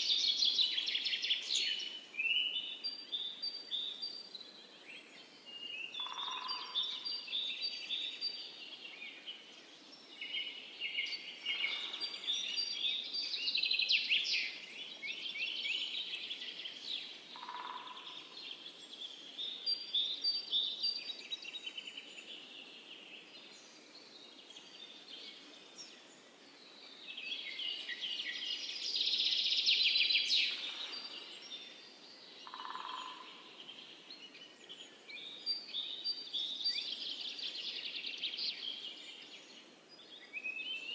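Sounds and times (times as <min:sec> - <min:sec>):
songbirds chirping and trilling: 0:00.0 - 0:40.9.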